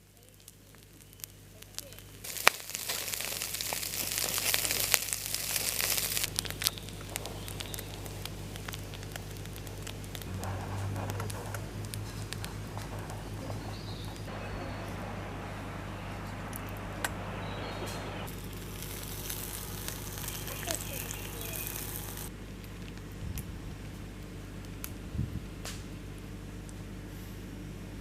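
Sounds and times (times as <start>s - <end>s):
crinkling and rustling: 0.0s - 15.4s
scattered crackles and clicks: 0.0s - 26.9s.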